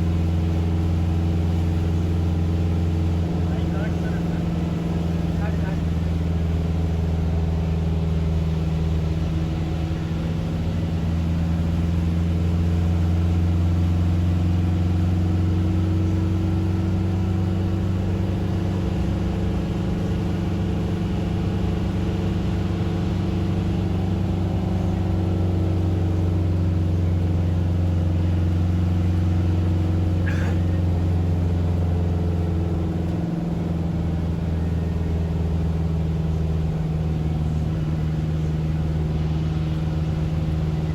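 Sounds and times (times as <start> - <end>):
road noise: 0.0 - 40.9
vehicle engine drone: 0.0 - 40.9.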